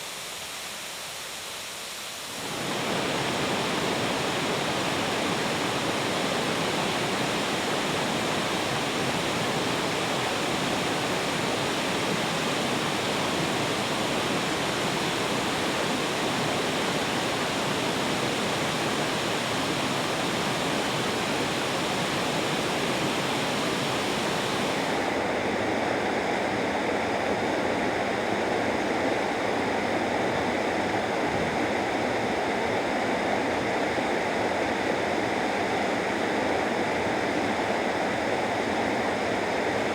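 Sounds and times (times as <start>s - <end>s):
waterfall rushing: 2.3s - 25.4s.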